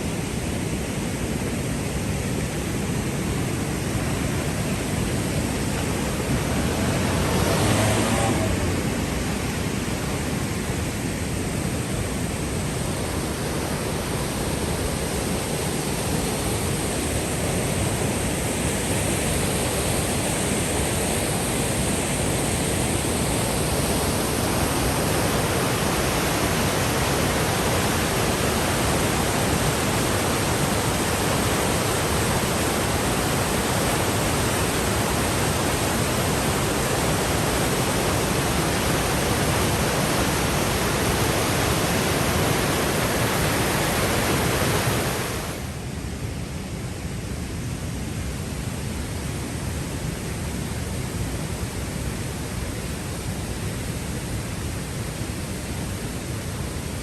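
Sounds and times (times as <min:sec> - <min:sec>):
waterfall rushing: 0:00.0 - 0:47.7.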